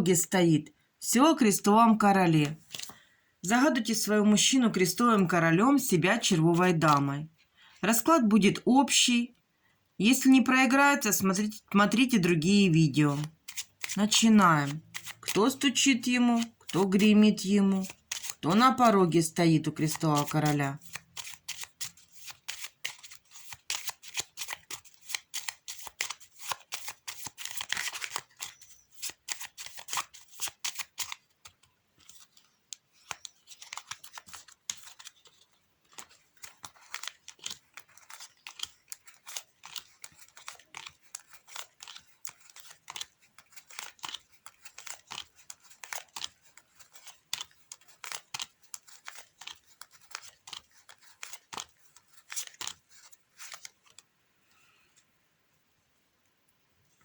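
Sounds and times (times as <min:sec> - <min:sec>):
playing cards shuffling: 0:02.5 - 0:03.0, 0:06.2 - 0:07.1, 0:13.1 - 0:18.9, 0:19.7 - 0:54.1.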